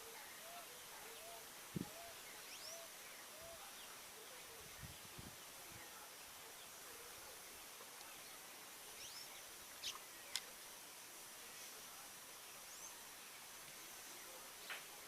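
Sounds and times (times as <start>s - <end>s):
bird calls: 0.0s - 4.9s, 8.9s - 10.4s.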